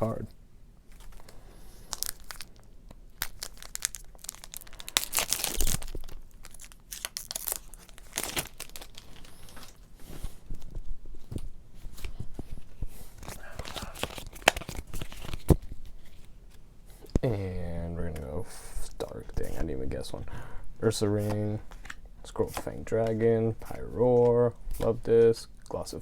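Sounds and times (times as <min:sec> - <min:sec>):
foil card pack tearing and crinkling: 0:00.9 - 0:02.6, 0:03.2 - 0:09.8, 0:13.2 - 0:15.7.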